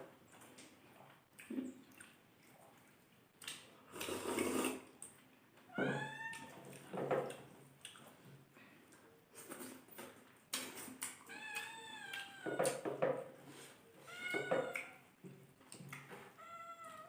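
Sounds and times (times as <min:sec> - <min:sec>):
cat meowing: 0:05.7 - 0:06.7, 0:11.3 - 0:12.8, 0:14.0 - 0:15.0, 0:16.3 - 0:17.0.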